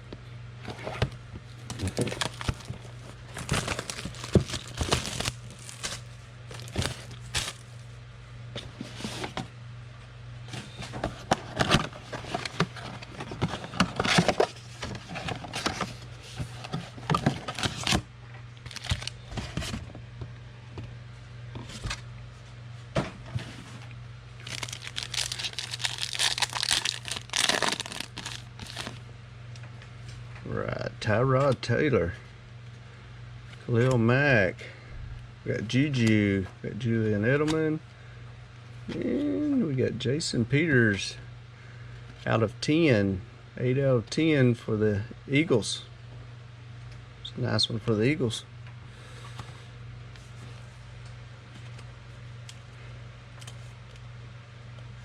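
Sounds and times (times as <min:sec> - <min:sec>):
steady low hum: 0:00.0 - 0:55.0
cards crackling: 0:01.7 - 0:07.7, 0:18.6 - 0:19.2, 0:24.4 - 0:29.0
foil wrappers crinkling and tearing: 0:01.7 - 0:07.8, 0:18.6 - 0:19.4, 0:24.4 - 0:29.0.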